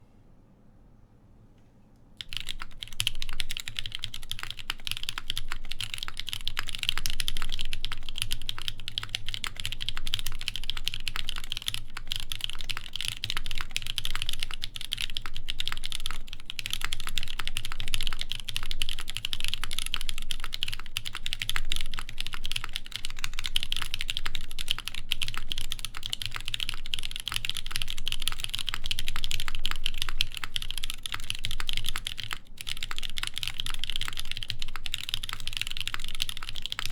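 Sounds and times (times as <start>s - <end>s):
fast typing on mechanical keyboard: 2.2s - 36.9s.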